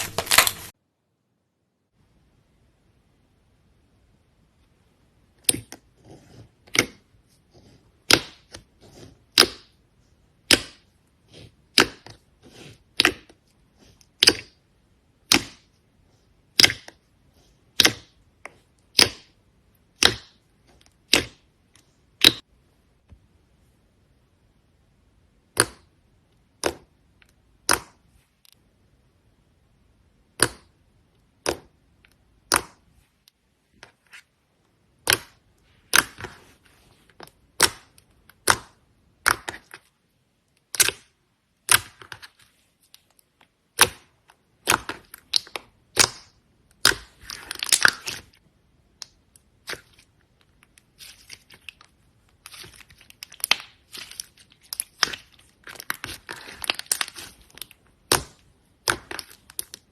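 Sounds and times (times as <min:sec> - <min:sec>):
slime popping and crackling: 0:00.0 - 0:00.7, 0:43.6 - 0:59.9.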